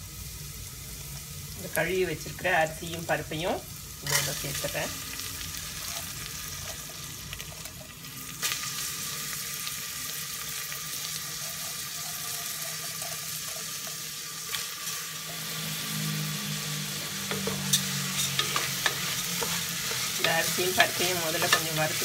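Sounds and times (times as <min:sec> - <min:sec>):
rice sizzling in hot ghee: 0:00.0 - 0:22.0.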